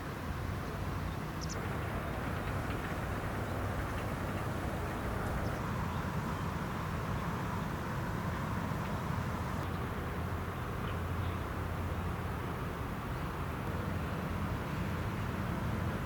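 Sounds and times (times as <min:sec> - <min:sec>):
outdoor rumble and hiss: 0:00.0 - 0:16.0
faint high chirp: 0:01.4 - 0:01.6.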